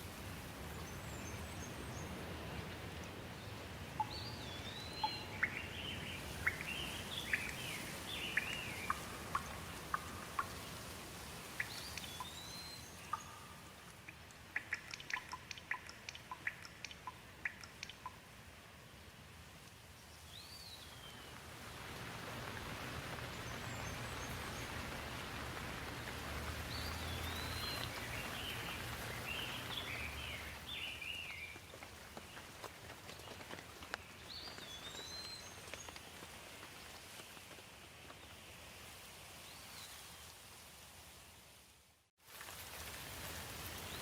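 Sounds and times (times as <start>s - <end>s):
steady rain falling: 0.0s - 44.0s
bird chirping: 3.4s - 10.8s, 11.5s - 18.2s, 26.7s - 31.7s.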